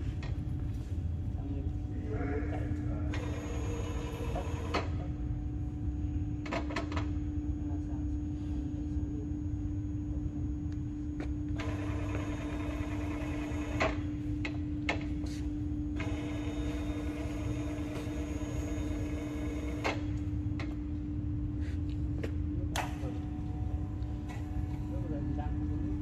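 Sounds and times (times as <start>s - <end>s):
electric motor humming: 16.0s - 20.2s.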